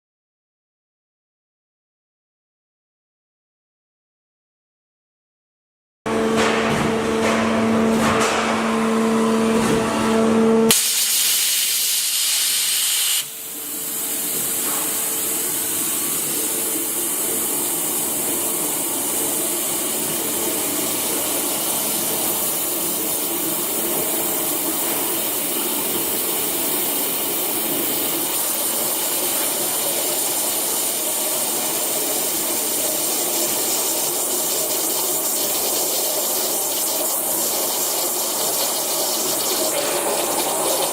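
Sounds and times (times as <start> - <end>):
water jet hissing: 10.7 - 40.9.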